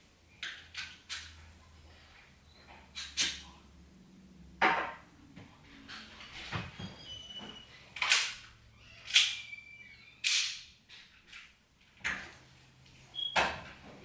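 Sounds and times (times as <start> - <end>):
faint squeak: 6.2 - 7.9, 8.8 - 10.2.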